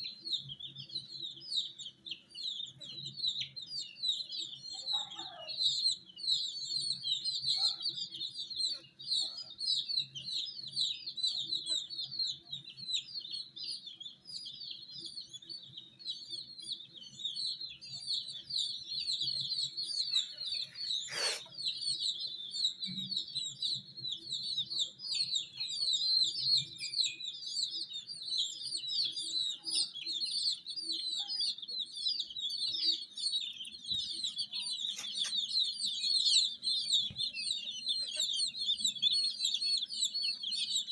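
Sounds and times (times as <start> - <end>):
chicks chirping: 0.0 - 40.9.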